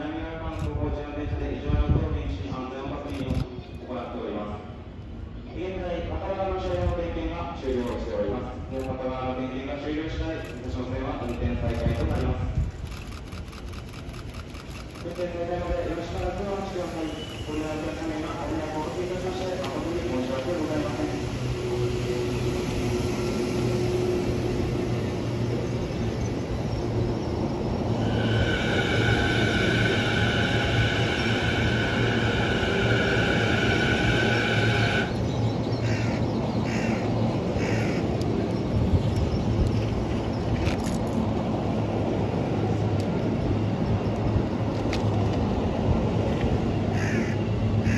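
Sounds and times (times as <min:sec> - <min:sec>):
electric train humming: 0:15.9 - 0:36.4.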